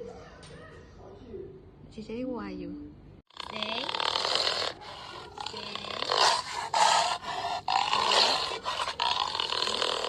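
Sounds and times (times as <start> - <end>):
dog growling: 3.3 - 10.0.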